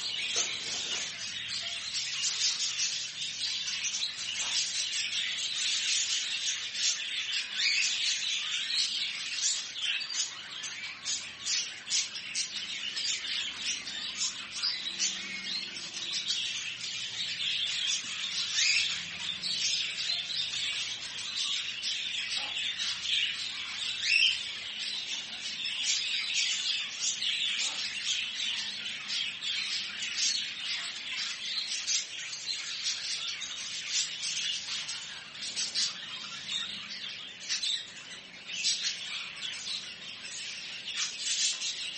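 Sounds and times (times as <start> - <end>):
caged birds chirping and squawking: 0.0 - 41.9.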